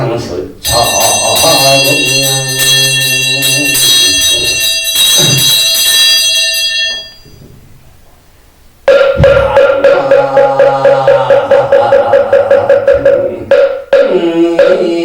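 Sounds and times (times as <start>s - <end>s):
handbell ringing: 0.6s - 7.4s
wooden fish struck: 8.9s - 10.9s
person chanting low note: 9.2s - 15.0s.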